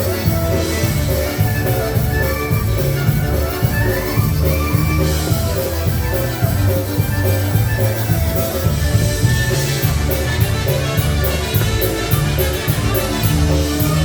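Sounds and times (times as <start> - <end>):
live polka band playing: 0.0 - 14.0.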